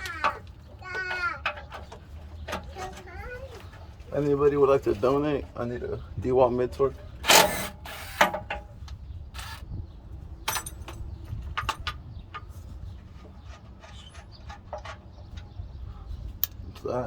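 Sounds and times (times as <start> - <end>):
tools and metal parts clicking: 0.0 - 3.1, 10.4 - 15.6, 16.3 - 16.9.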